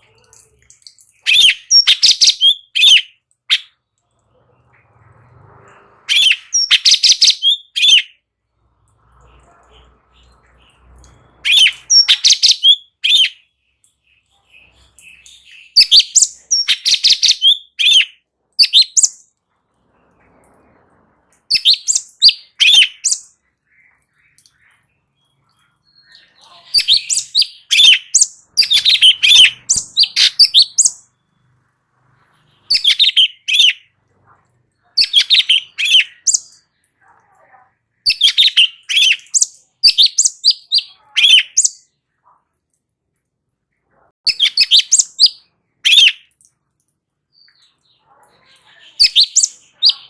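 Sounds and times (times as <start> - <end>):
bird warbling song: 0.0 - 3.8, 6.0 - 8.2, 9.2 - 19.3, 19.9 - 31.2, 32.4 - 34.0, 34.8 - 36.9, 38.0 - 41.9, 44.2 - 46.4, 47.3 - 50.0.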